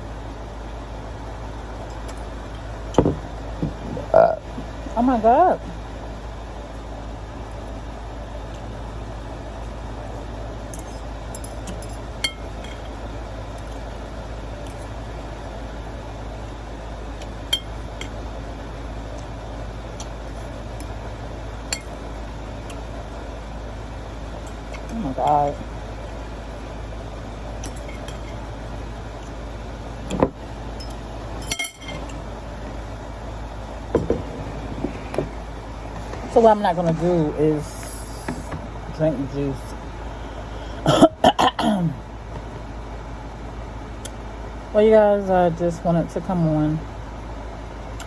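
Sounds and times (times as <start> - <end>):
steady background hum: 0.0 - 48.0
utensil clinking against dish: 30.1 - 32.2.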